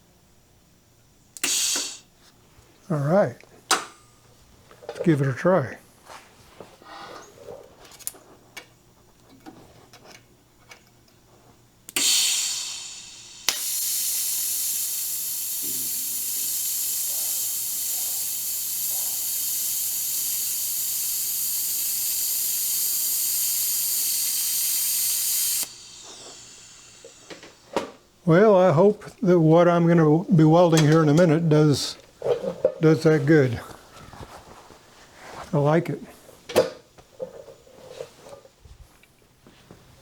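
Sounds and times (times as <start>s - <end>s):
gas hissing: 1.4s - 2.1s, 11.9s - 29.5s
welding arc buzzing: 1.4s - 2.1s, 11.9s - 27.8s
welding arc striking crack: 13.2s - 25.8s.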